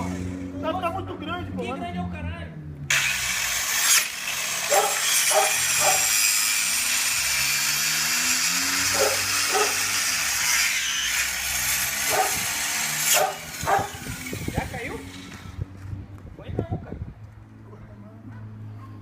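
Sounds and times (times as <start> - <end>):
electric saw cutting log: 2.9 - 15.6.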